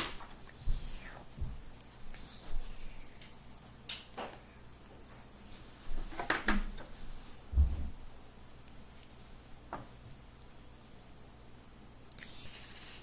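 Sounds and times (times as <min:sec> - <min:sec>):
dull thump: 0:07.5 - 0:08.0.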